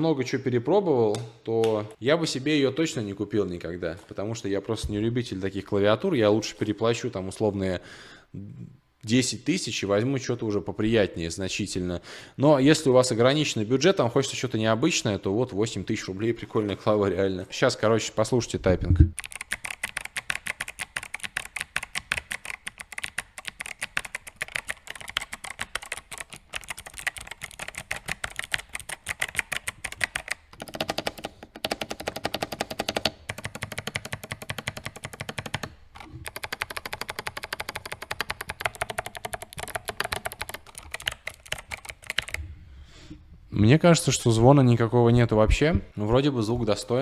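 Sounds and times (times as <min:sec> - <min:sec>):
fast typing on clicky keyboard: 0:19.2 - 0:42.4.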